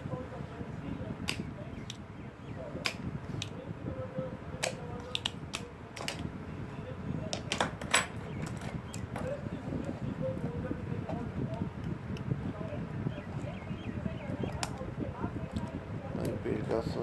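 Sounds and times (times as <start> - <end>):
desoldering pump snapping: 1.2 - 2.1, 2.7 - 3.6, 4.6 - 6.4, 7.2 - 9.4, 14.4 - 14.9.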